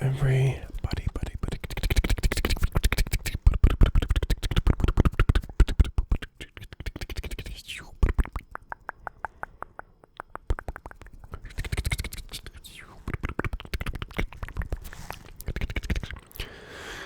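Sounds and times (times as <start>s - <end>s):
wet mouth clicks and smacks: 0.8s - 16.6s
breathy sweeps: 16.4s - 17.0s.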